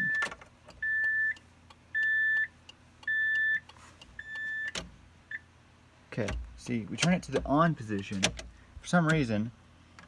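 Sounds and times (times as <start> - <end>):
high electronic beeps: 0.0 - 1.4, 2.0 - 3.6, 4.2 - 5.4.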